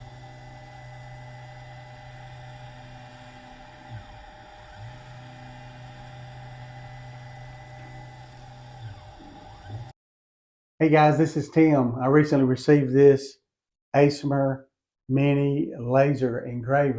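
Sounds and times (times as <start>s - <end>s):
low electrical hum: 0.0s - 9.9s.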